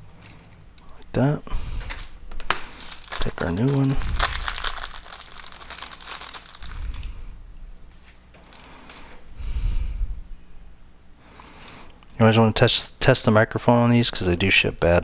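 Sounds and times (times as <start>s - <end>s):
packaging crinkling: 1.9s - 7.2s.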